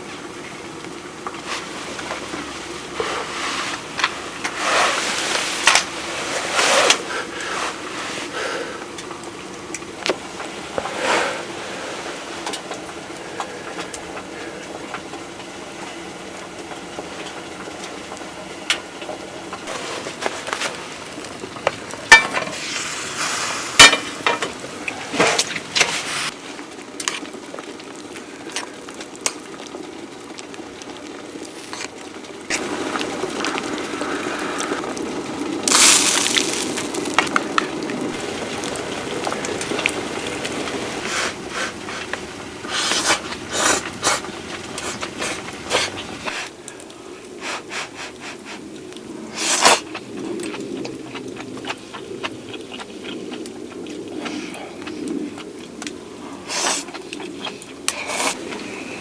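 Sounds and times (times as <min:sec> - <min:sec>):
food sizzling in a pan: 0:00.0 - 0:50.0
utensil scraping a pan: 0:02.9 - 0:08.6.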